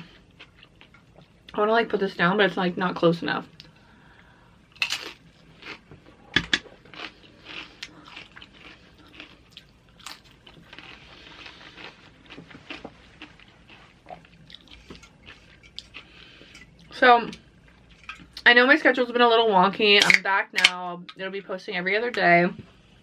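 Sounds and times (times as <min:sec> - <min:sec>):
crunching and chewing chips: 0:04.7 - 0:16.9.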